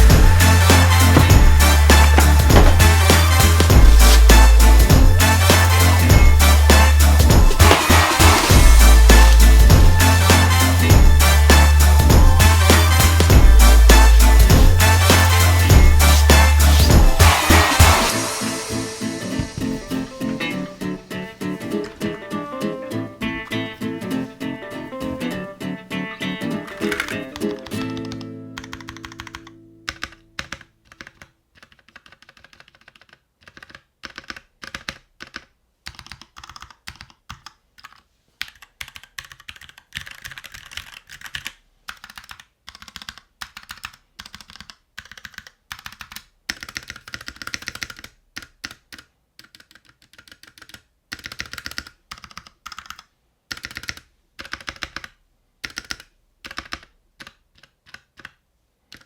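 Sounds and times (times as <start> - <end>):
typing on mechanical keyboard: 26.6 - 59.0.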